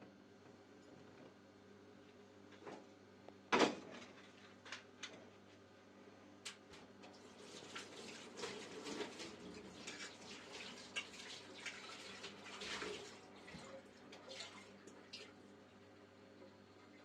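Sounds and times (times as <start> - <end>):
water splashing and trickling: 7.2 - 15.4.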